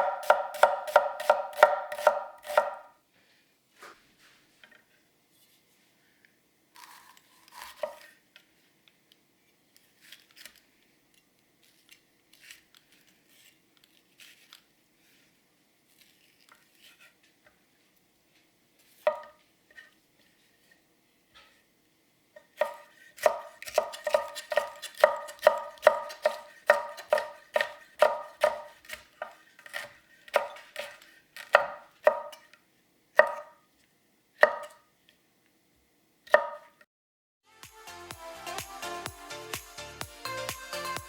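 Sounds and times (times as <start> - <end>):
knife chopping on cutting board: 0.0 - 2.9, 6.8 - 8.1, 19.1 - 19.4, 22.6 - 32.5, 33.2 - 33.6, 34.4 - 34.8, 36.3 - 36.8.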